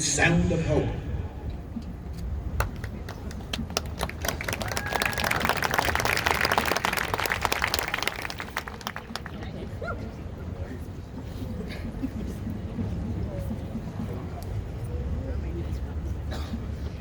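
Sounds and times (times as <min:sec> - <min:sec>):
crowd clapping: 0:02.6 - 0:09.5.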